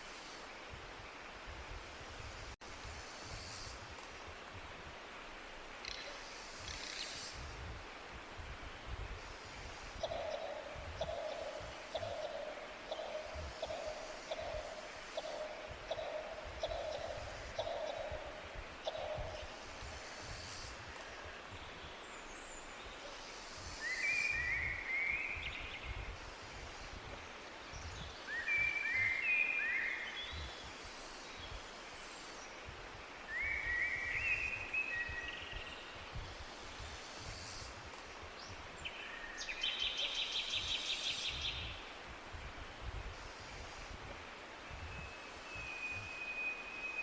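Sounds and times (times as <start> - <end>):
bird singing whistled notes: 23.8 - 26.0, 27.8 - 30.6, 33.3 - 35.8, 44.8 - 47.0.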